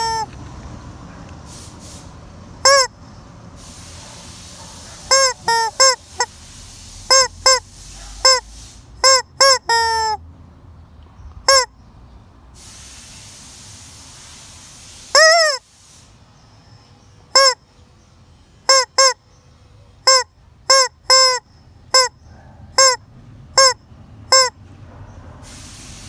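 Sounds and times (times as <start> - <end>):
chicken squawking: 0.0 - 0.4, 2.6 - 3.0, 3.6 - 10.2, 11.5 - 11.7, 15.1 - 15.6, 17.4 - 17.6, 18.7 - 19.2, 20.0 - 23.0, 23.6 - 24.5.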